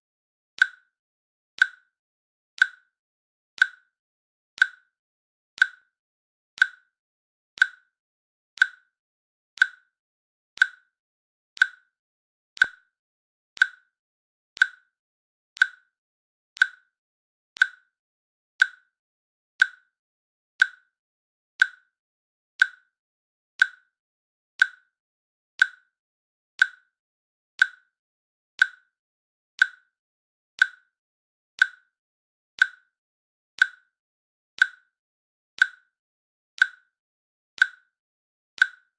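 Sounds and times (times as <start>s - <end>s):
timer ticking: 0.6s - 0.9s, 1.6s - 1.9s, 2.6s - 2.9s, 3.6s - 4.0s, 4.6s - 4.9s, 5.6s - 5.9s, 6.6s - 6.9s, 7.6s - 8.0s, 8.6s - 9.0s, 9.6s - 10.0s, 10.6s - 11.0s, 11.6s - 12.0s, 12.6s - 13.0s, 13.6s - 14.0s, 14.6s - 15.0s, 15.6s - 16.0s, 16.6s - 17.0s, 17.6s - 18.0s, 18.6s - 18.9s, 19.6s - 20.0s, 20.6s - 20.9s, 21.6s - 21.9s, 22.6s - 22.9s, 23.6s - 24.0s, 24.6s - 25.0s, 25.6s - 25.9s, 26.6s - 27.0s, 27.6s - 27.9s, 28.6s - 29.0s, 29.6s - 29.9s, 30.6s - 31.0s, 31.6s - 32.0s, 32.6s - 33.0s, 33.6s - 34.0s, 34.6s - 35.0s, 35.6s - 36.0s, 36.6s - 37.0s, 37.6s - 38.0s, 38.6s - 38.9s.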